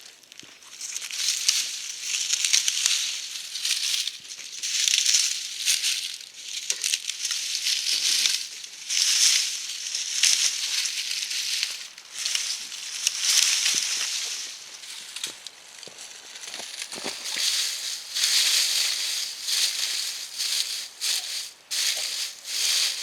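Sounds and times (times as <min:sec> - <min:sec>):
snow shovel scraping snow: 0:16.8 - 0:23.0.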